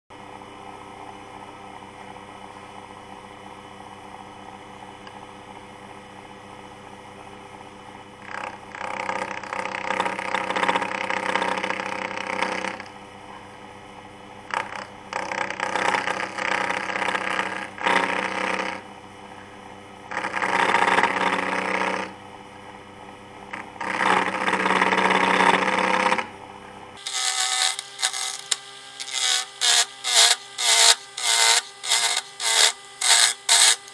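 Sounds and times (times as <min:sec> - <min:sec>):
lathe tool cutting wood: 0:08.2 - 0:12.9, 0:14.5 - 0:18.8, 0:20.1 - 0:22.2, 0:23.5 - 0:26.3, 0:27.0 - 0:33.9
lathe motor humming: 0:14.5 - 0:33.9.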